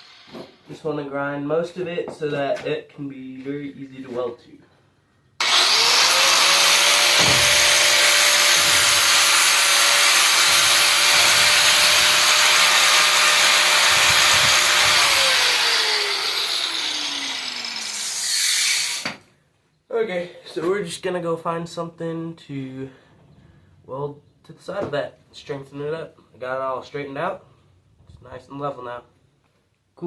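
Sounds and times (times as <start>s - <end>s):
angle grinder grinding steel: 0.0s - 0.6s, 5.4s - 19.2s.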